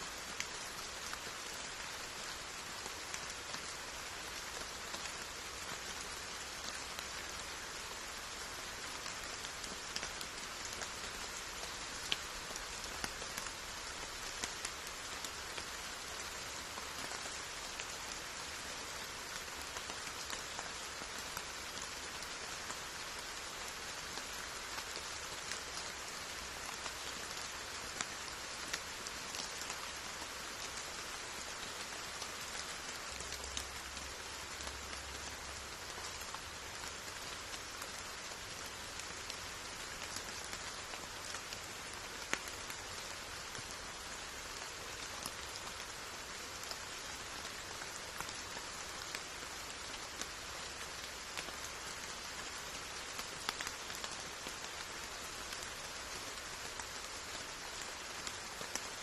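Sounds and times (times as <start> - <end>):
steady rain hiss: 0.0 - 59.0
raindrops ticking: 32.4 - 45.8, 46.6 - 54.8.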